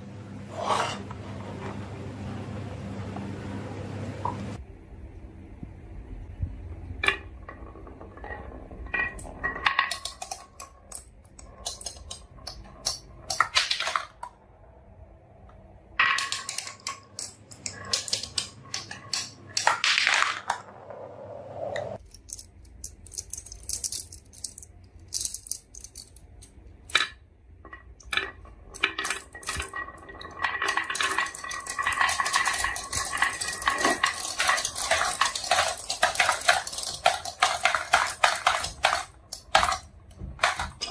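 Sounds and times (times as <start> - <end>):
marbles clattering down a marble run: 7.0 - 14.3, 16.0 - 20.9, 27.0 - 40.9.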